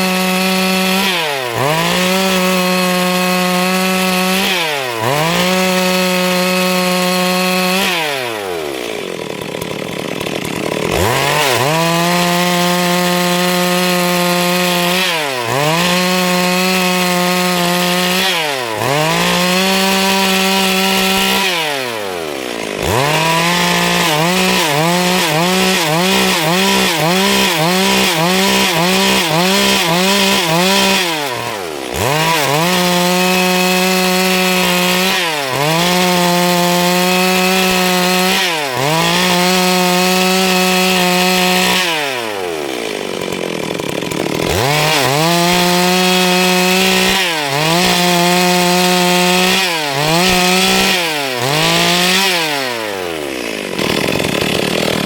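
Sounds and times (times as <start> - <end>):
chainsaw cutting wood: 0.0 - 55.0.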